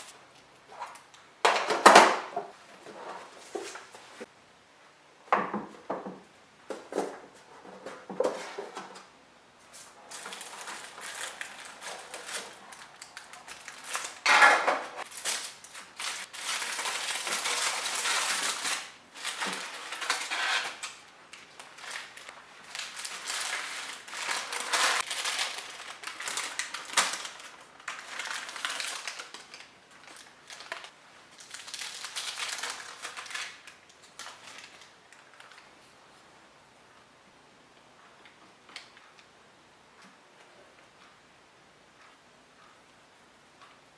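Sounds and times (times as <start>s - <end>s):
rustling and scraping: 2.3s - 4.3s, 6.7s - 29.2s.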